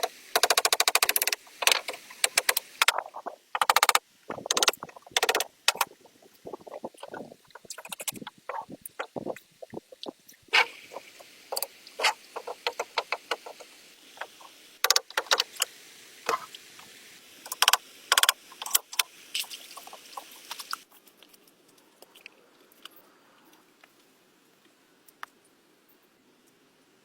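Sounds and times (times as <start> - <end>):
sharp knocks and clicks: 0.0 - 10.1, 11.5 - 15.7.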